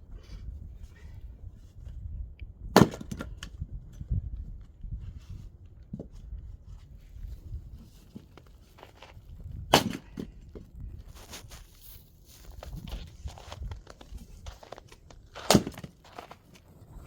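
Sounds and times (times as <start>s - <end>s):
axe chopping firewood: 2.8s - 3.4s, 9.7s - 10.3s, 15.4s - 16.2s.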